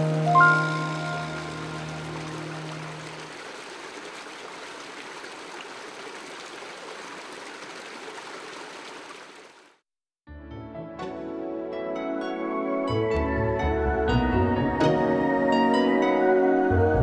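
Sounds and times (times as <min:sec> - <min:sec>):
held music chord: 0:00.0 - 0:03.2
creek rushing and trickling: 0:00.0 - 0:09.8.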